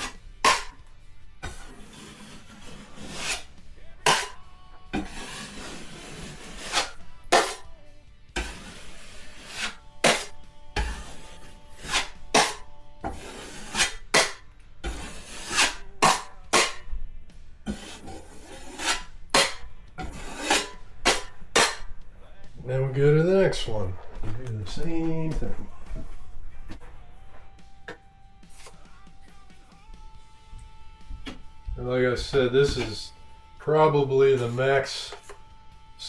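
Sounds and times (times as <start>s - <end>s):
taping knife scraping compound: 0.0s - 16.9s, 17.6s - 22.0s, 31.3s - 35.4s.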